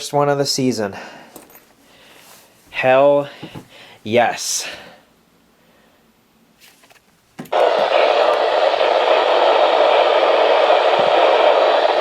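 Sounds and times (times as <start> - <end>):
radio static hiss: 7.6 - 12.0.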